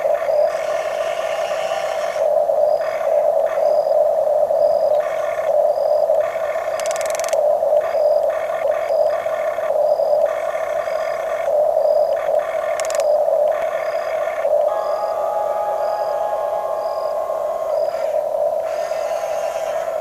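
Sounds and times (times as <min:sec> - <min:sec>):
toy electric motors whining: 0:00.4 - 0:02.3, 0:06.5 - 0:07.4, 0:12.5 - 0:13.2, 0:14.6 - 0:20.0
steady drone: 0:14.2 - 0:20.0.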